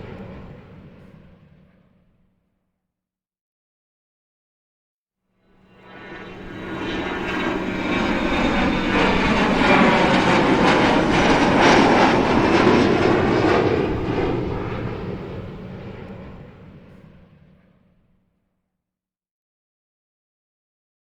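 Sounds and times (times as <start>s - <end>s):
jet aircraft flying over: 0.0s - 2.1s, 5.5s - 18.1s.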